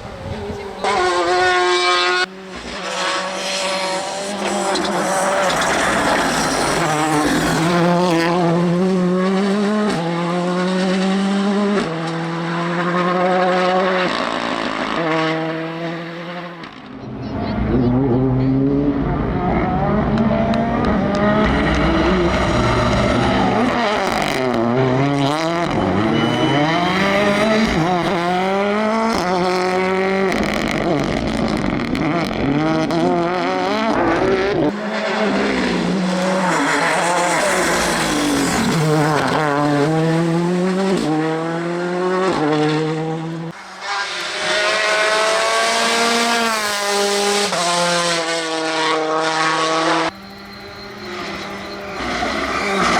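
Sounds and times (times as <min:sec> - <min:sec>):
rally car engine revving: 0:00.0 - 0:52.9.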